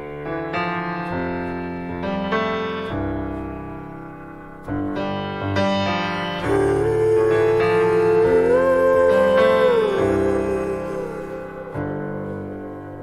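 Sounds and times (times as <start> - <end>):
piano chords ringing: 0.0 - 13.0.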